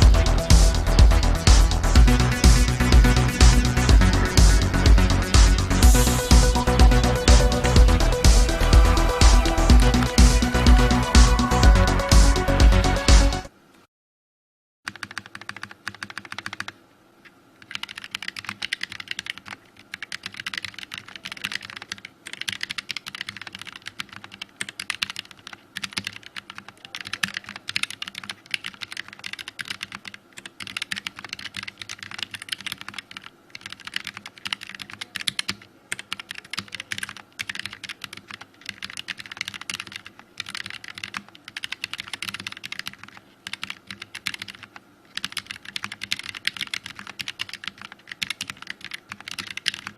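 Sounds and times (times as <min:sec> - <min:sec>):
mechanical keyboard typing: 0:00.0 - 0:13.3, 0:14.9 - 0:16.8, 0:17.6 - 0:49.9.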